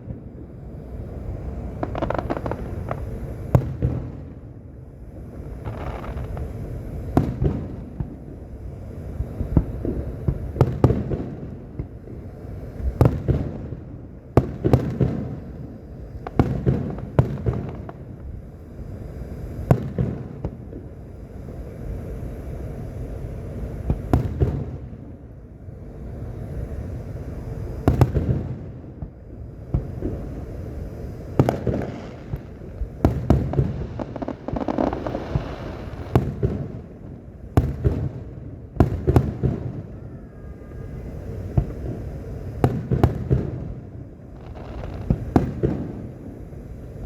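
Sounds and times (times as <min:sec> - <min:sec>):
firework shells bursting: 0:29.8 - 0:38.1.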